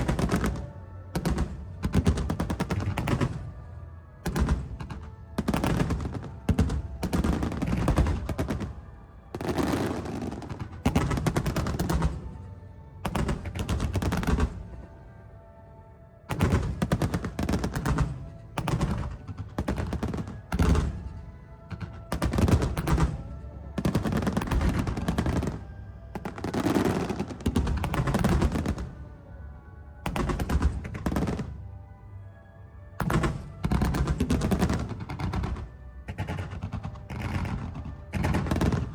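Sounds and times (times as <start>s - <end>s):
fireworks bursting and crackling: 0.0s - 3.5s, 4.2s - 12.4s, 13.1s - 14.8s, 16.3s - 25.6s, 26.2s - 29.0s, 30.1s - 31.6s, 33.0s - 38.9s.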